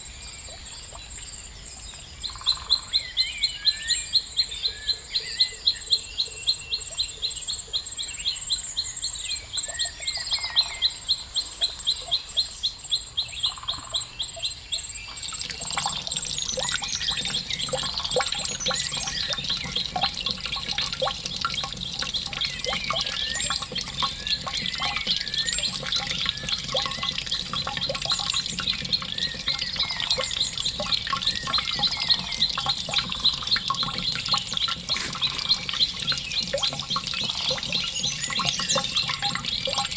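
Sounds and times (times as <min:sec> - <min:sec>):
small birds chirping: 0:00.0 - 0:39.9
running water: 0:11.3 - 0:39.9.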